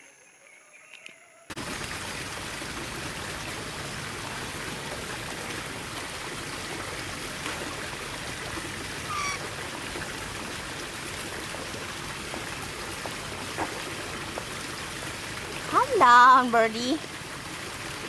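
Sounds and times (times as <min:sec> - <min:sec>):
flowing water rushing: 0:01.6 - 0:18.0
bird call falling in pitch: 0:09.1 - 0:09.5.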